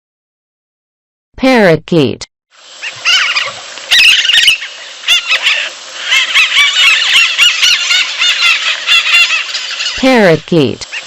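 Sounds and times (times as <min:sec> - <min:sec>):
parakeet chirping: 0:02.8 - 0:10.0.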